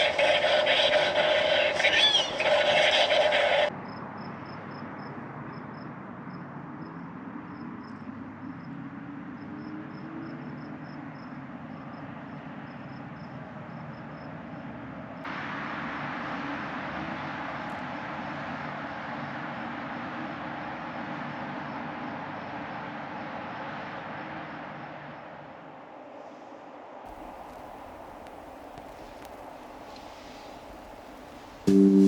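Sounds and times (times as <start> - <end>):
distant city traffic hum: 0.0 - 32.0
crickets chirping: 3.7 - 8.8, 9.4 - 14.7, 27.1 - 32.0
music: 31.6 - 32.0.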